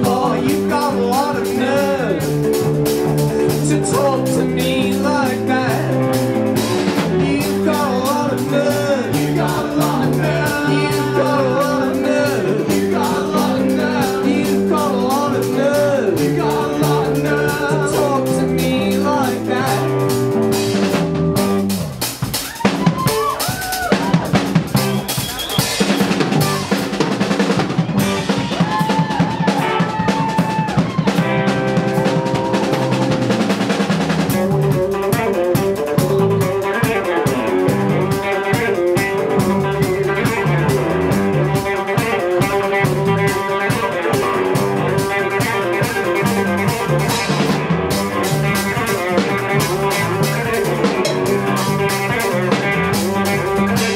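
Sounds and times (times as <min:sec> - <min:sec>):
lead guitar bending notes: 0:00.0 - 0:22.0, 0:30.7 - 0:53.9
bass guitar: 0:00.0 - 0:53.9
drums: 0:00.0 - 0:53.9.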